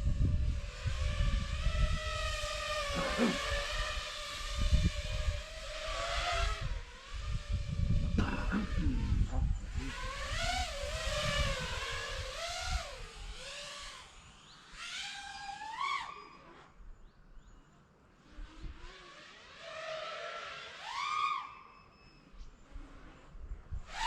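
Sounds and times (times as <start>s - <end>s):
wind rumble on microphone: 0.0s - 14.1s, 22.4s - 24.0s
quadcopter motors whining: 0.0s - 24.0s.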